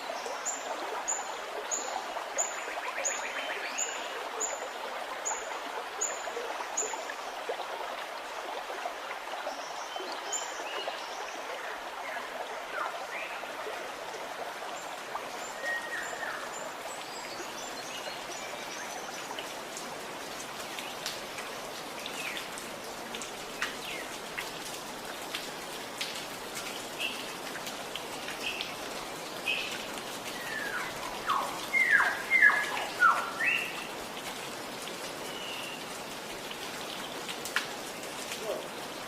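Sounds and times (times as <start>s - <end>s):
birds chirping: 28.1s - 34.0s.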